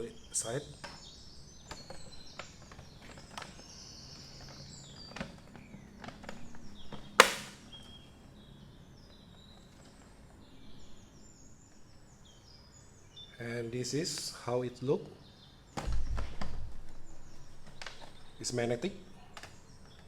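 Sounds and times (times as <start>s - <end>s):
sharp loud snap: 7.2s - 7.7s.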